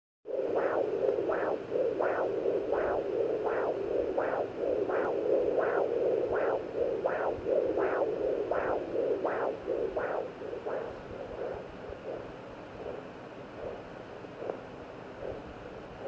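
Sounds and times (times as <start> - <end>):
fetal doppler pulsing whoosh: 0.3 - 13.0
steady speaker hiss: 0.3 - 16.0.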